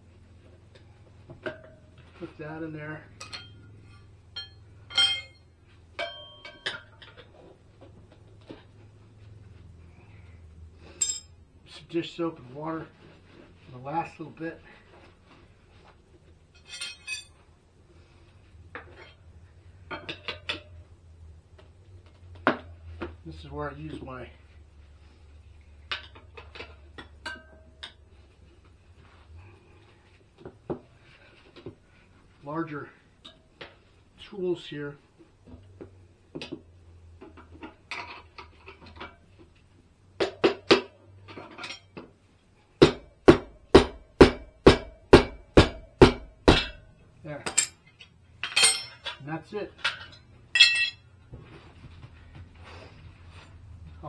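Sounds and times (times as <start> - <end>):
metal tire levers clinking on rim: 3.0 - 7.4, 10.9 - 11.4, 16.5 - 17.4, 46.6 - 51.1
sharp metallic knocks: 4.4 - 5.4, 42.8 - 46.8.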